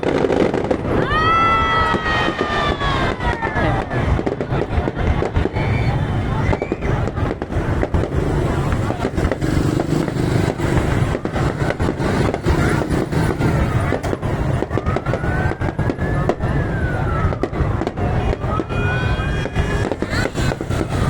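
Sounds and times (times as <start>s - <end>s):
crowd and traffic din: 0.0s - 21.0s
fireworks popping and crackling: 0.0s - 21.0s
siren wailing: 10.4s - 21.0s.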